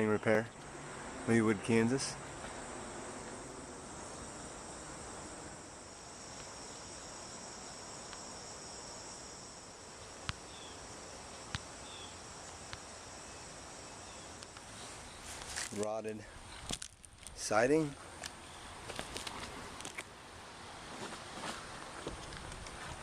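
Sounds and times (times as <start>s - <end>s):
insects droning: 0.0s - 23.0s.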